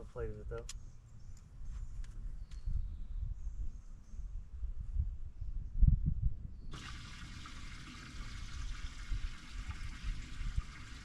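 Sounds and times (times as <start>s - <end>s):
water spraying: 6.7s - 11.0s.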